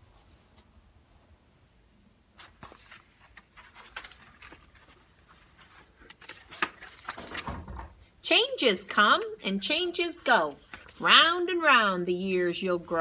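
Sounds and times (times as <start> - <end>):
paper rustling: 2.4 - 7.9, 9.0 - 11.4
book pages turned with soft knocks: 10.5 - 11.1.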